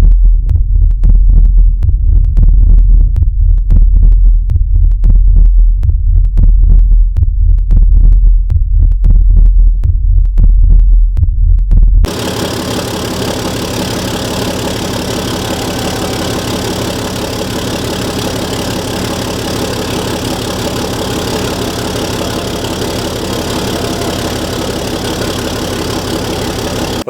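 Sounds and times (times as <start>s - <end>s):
diesel engine idling: 12.1s - 27.0s.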